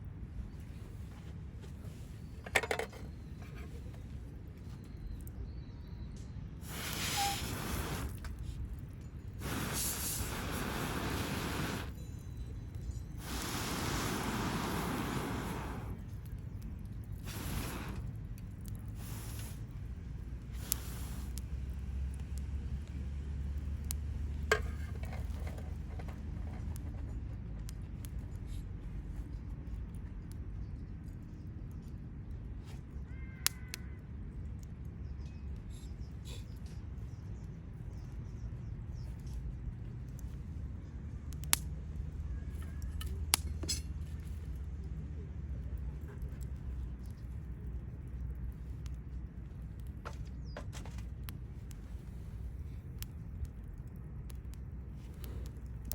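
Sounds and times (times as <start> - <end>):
wind rumbling on microphone: 0.0 - 32.6
wood fire crackling: 6.2 - 55.9
rushing hiss of wind gusts: 6.6 - 8.4, 9.4 - 12.0, 13.2 - 16.1, 17.2 - 18.2, 18.9 - 19.8, 20.5 - 21.6
loud crack of fire: 6.6 - 26.8, 39.8 - 55.9.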